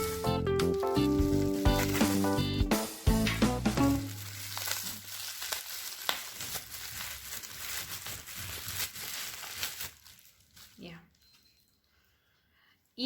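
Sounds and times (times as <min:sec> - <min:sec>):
background music: 0:00.0 - 0:04.2
packaging crinkling and rustling: 0:00.0 - 0:11.7.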